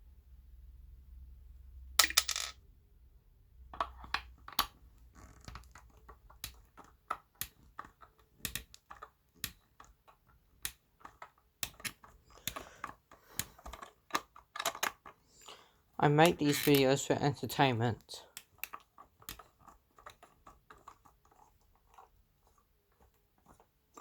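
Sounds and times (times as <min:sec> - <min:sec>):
clicks and knocks of handling parts: 0:03.8 - 0:17.0, 0:18.3 - 0:24.0.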